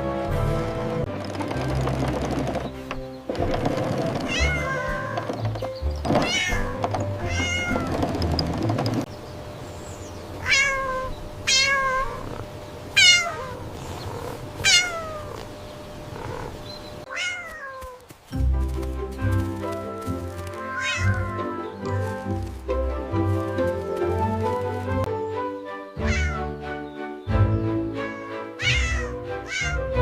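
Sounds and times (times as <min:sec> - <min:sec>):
background music: 0:00.0 - 0:09.1, 0:18.3 - 0:30.0
cat meowing: 0:04.3 - 0:05.2, 0:06.2 - 0:07.9, 0:10.4 - 0:12.4, 0:13.0 - 0:15.4, 0:17.1 - 0:18.0, 0:20.6 - 0:21.8, 0:26.0 - 0:26.5, 0:28.0 - 0:30.0.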